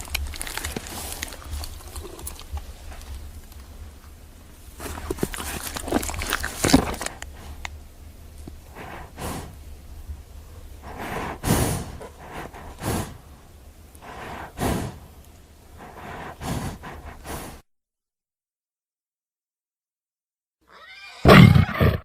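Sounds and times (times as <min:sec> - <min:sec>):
animal breathy puffs: 0:08.5 - 0:09.7, 0:10.4 - 0:13.4, 0:14.0 - 0:15.1, 0:15.8 - 0:17.6.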